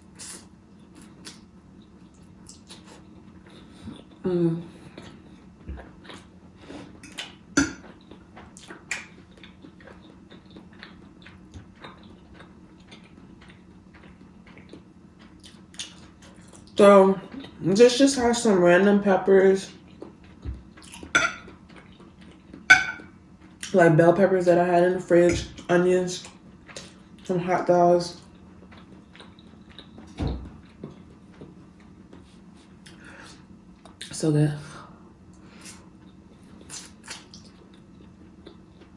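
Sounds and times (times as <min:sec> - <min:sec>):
person chewing spaghetti: 0:00.0 - 0:17.6, 0:19.7 - 0:23.7, 0:26.2 - 0:27.3, 0:28.2 - 0:34.0, 0:35.4 - 0:38.9
faint steady hum: 0:00.0 - 0:38.9
wet chewing mouth clicks: 0:36.6 - 0:37.6.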